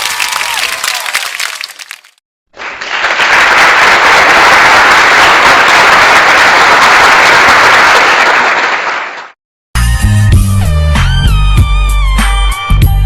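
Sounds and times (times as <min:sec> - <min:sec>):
crowd applauding: 0:00.0 - 0:09.4.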